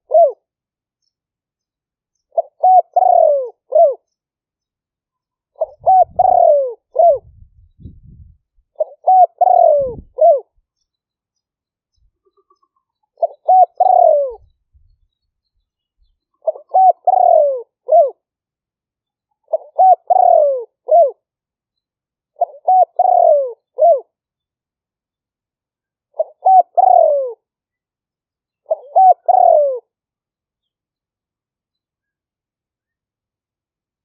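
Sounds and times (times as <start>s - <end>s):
dove cooing: 0.0s - 0.4s, 2.3s - 4.0s, 5.6s - 7.3s, 8.8s - 10.5s, 12.3s - 14.5s, 16.4s - 18.2s, 19.4s - 21.2s, 22.4s - 24.2s, 26.1s - 27.5s, 28.6s - 29.9s.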